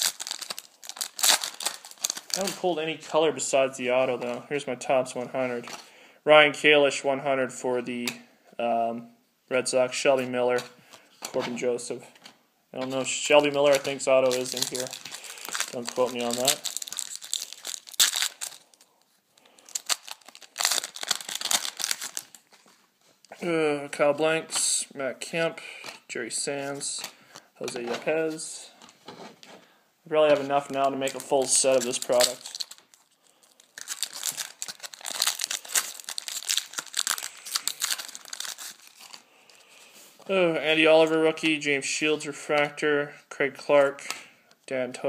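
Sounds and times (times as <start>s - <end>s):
foil wrapper crinkling and tearing: 0.0s - 2.6s, 13.3s - 22.7s, 30.6s - 39.6s.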